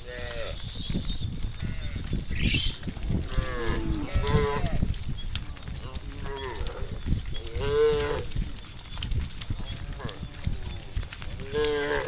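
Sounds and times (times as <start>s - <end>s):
cattle mooing: 1.7s - 5.2s.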